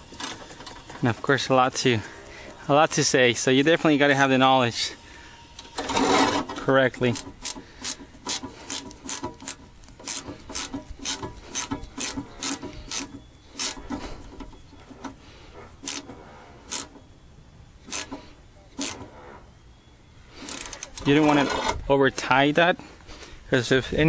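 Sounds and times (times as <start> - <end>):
ratchet wrench clicking: 7.2 - 13.8, 15.8 - 16.1, 16.7 - 16.9, 17.9 - 18.2, 18.8 - 19.0.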